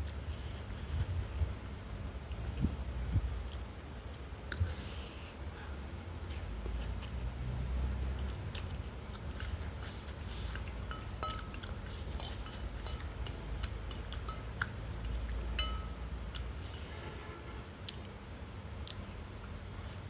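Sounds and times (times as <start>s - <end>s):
chewing: 8.1s - 15.4s
utensils clinking on a plate: 9.4s - 16.5s.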